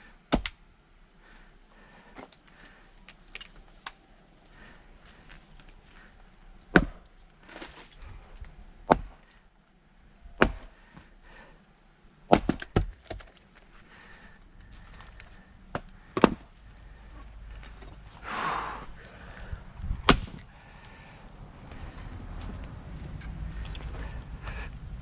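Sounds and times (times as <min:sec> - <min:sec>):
wood splitting strikes and cracks: 0:00.3 - 0:00.6, 0:06.7 - 0:09.4, 0:10.3 - 0:10.8, 0:12.3 - 0:13.7, 0:14.6 - 0:16.6, 0:19.8 - 0:20.5.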